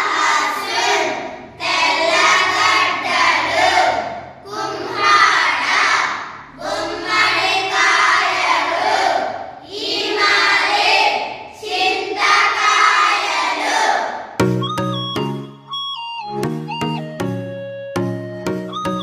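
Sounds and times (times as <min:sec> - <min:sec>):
children reciting in unison: 0:00.0 - 0:14.3
electronic tune: 0:14.4 - 0:19.0.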